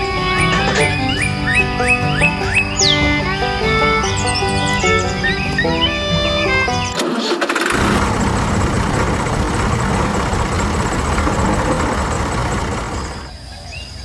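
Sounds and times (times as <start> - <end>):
engine running roughly: 7.5 - 13.3.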